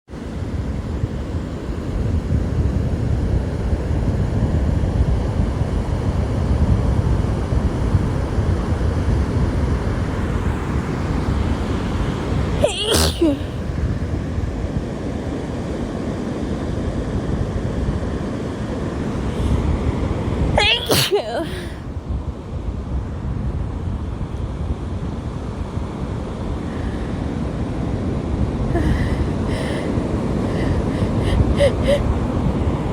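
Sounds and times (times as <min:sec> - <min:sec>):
wind on microphone: 0:00.2 - 0:32.9
woman sneezing: 0:12.6 - 0:13.5, 0:20.6 - 0:21.8, 0:31.2 - 0:32.0.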